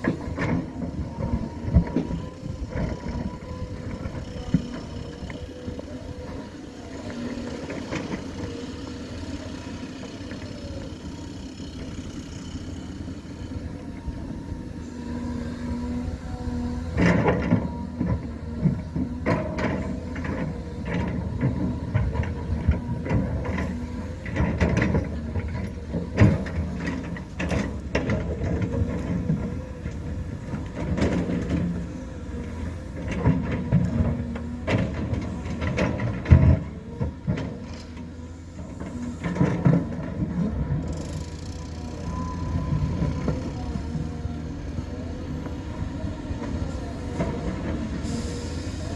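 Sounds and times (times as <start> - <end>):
diesel machinery running: 0.0 - 48.9.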